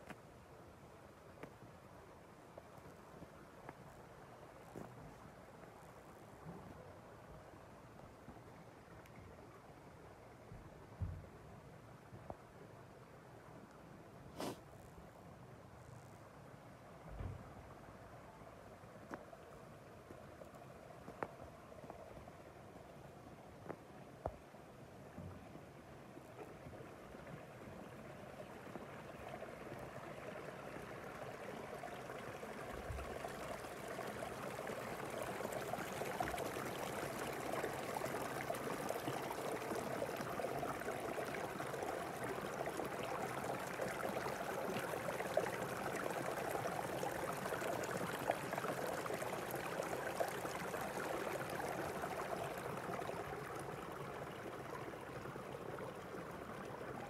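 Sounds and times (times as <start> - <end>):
rushing water: 17.7 - 57.0.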